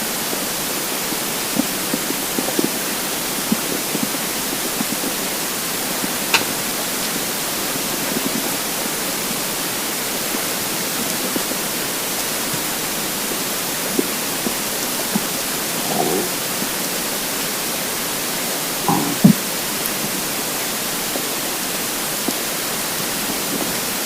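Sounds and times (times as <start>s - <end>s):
loud steady hiss: 0.0s - 24.0s
stomach gurgling: 13.7s - 20.2s.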